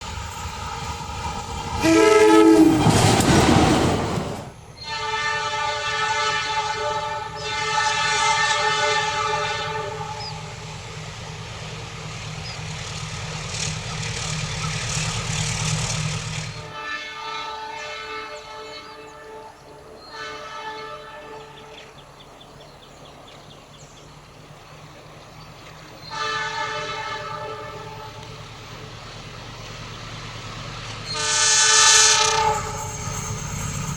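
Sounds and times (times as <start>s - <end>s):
train rumbling past: 0.0s - 33.9s
train horn blast: 1.7s - 11.0s, 16.1s - 22.2s, 25.9s - 28.9s, 31.0s - 33.9s.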